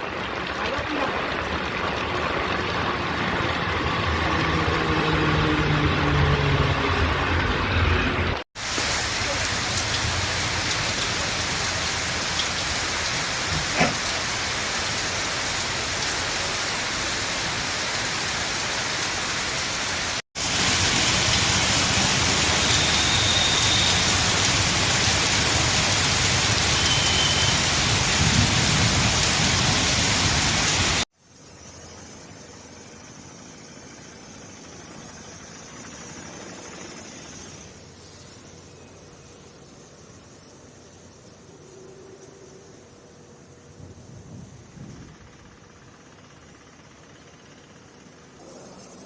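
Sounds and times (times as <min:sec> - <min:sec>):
heavy rain falling: 0:00.0 - 0:31.1.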